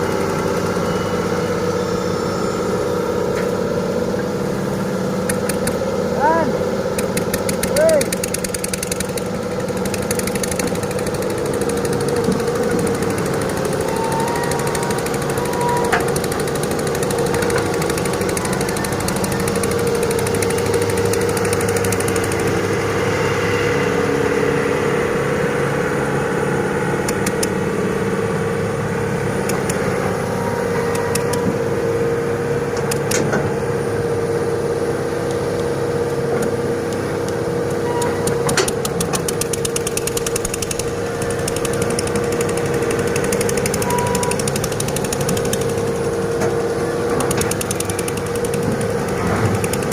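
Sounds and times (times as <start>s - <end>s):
excavator engine humming: 0.0s - 49.9s
sharp clicks: 5.2s - 5.8s, 6.9s - 22.6s, 27.0s - 27.6s, 29.4s - 30.0s, 30.8s - 31.6s, 32.7s - 33.4s, 36.3s - 49.9s.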